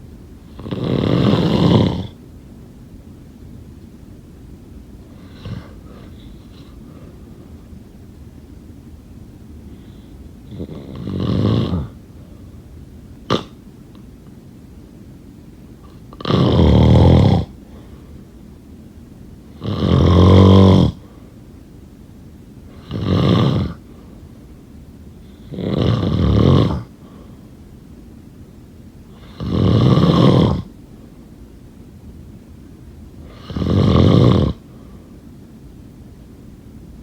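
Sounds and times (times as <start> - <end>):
person snoring: 0.6 - 2.2, 10.5 - 12.0, 15.9 - 17.6, 19.6 - 21.0, 22.8 - 23.8, 25.4 - 26.9, 29.2 - 30.7, 33.2 - 34.6.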